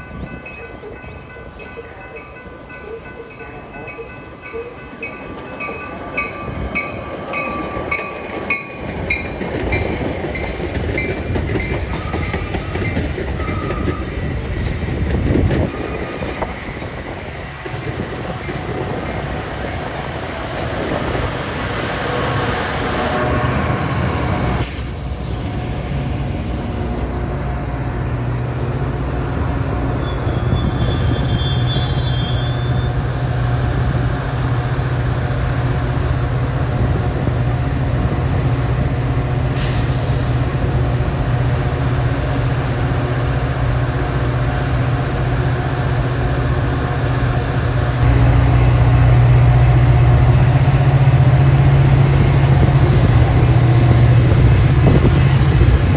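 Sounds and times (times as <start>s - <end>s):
diesel locomotive humming: 0.0s - 55.9s
brief high squeal: 30.0s - 33.0s.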